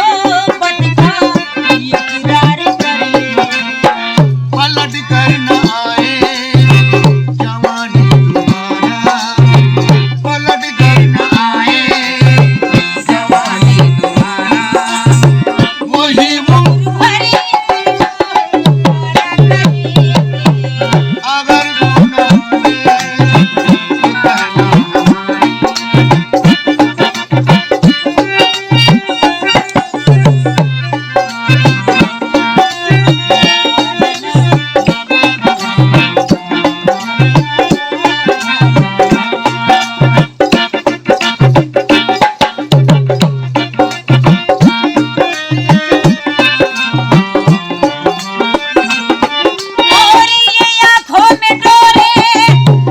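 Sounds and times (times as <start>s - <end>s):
hand drum rhythm: 0.0s - 52.9s.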